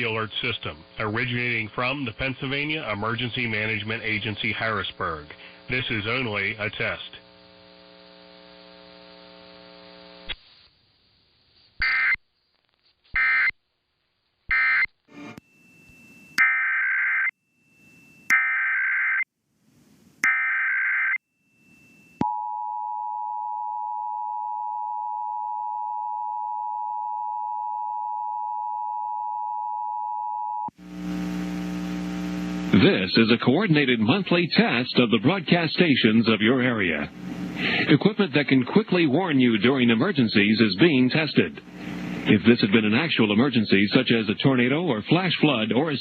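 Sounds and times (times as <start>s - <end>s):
low electrical hum: 0.0s - 11.6s, 30.7s - 46.0s.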